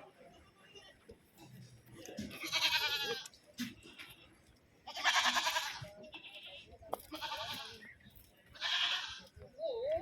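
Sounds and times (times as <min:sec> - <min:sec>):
goats bleating: 0:02.3 - 0:03.3, 0:04.9 - 0:07.8, 0:08.6 - 0:09.3.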